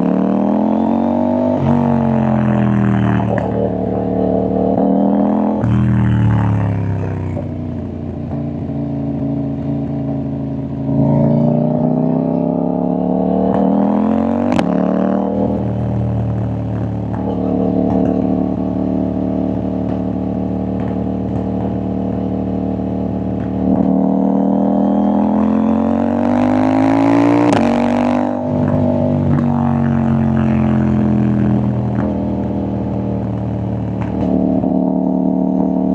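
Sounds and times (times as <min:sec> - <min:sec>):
motorcycle engine revving: 0:00.0 - 0:35.9
exhaust crack: 0:01.6 - 0:10.2, 0:13.4 - 0:24.3, 0:27.3 - 0:34.7.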